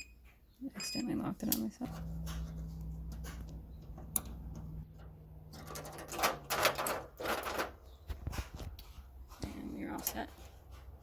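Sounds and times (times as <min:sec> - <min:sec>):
padlock clicking and rattling: 0:01.4 - 0:08.0
steady low hum: 0:01.8 - 0:05.8.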